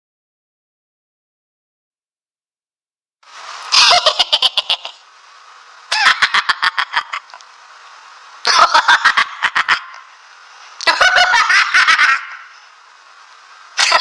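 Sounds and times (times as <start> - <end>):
faint hiss: 3.2 - 14.0
cartoon laughter: 3.7 - 5.0, 5.9 - 7.4, 8.4 - 10.1, 10.8 - 12.5, 13.8 - 14.0.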